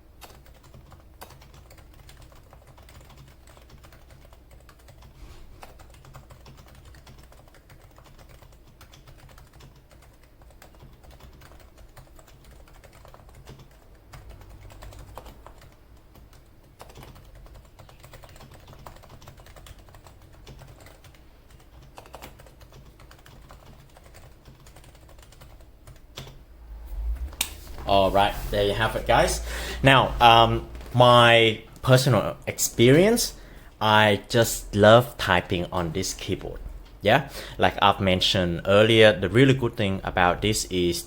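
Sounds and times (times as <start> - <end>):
soft muted keyboard typing: 0.0 - 27.2.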